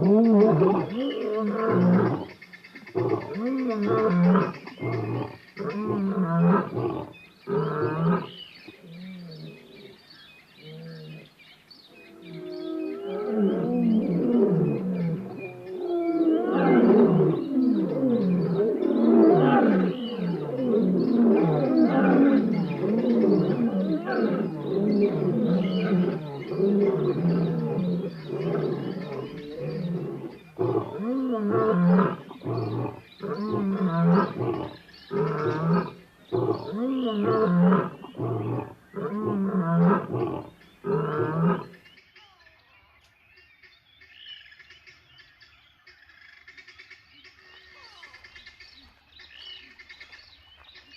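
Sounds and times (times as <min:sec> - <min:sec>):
lion roaring: 0:12.2 - 0:41.7
lion grunting calls: 0:12.2 - 0:41.8.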